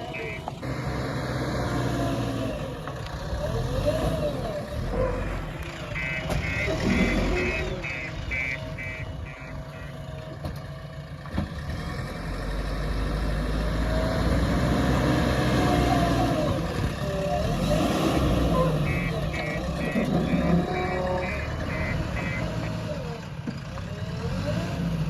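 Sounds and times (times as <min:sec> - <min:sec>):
reversing alarm beeps: 0:00.0 - 0:00.5, 0:05.9 - 0:10.0, 0:18.8 - 0:22.8
diesel engine running: 0:00.0 - 0:25.0.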